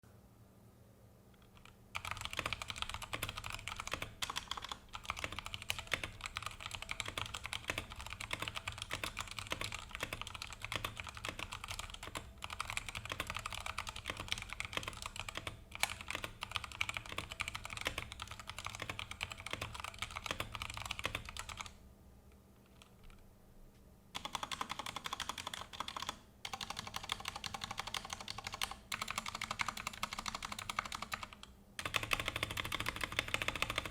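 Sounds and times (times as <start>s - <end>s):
mechanical keyboard typing: 1.4s - 21.8s, 24.2s - 33.9s.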